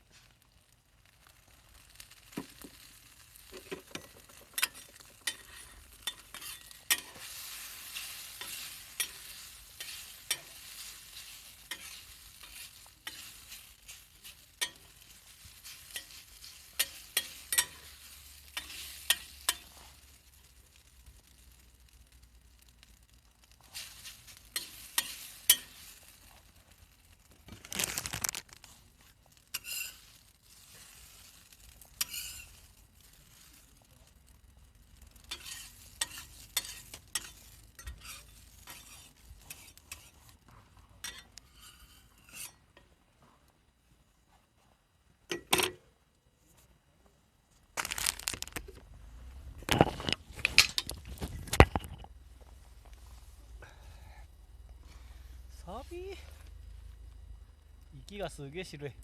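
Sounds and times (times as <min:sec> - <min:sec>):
food sizzling on griddle: 0:00.0 - 0:42.9, 0:47.8 - 0:59.0
metal utensils scraping and clattering: 0:02.4 - 0:20.1, 0:23.6 - 0:26.2, 0:29.5 - 0:32.8, 0:35.2 - 0:40.4, 0:41.0 - 0:42.6, 0:49.6 - 0:52.1.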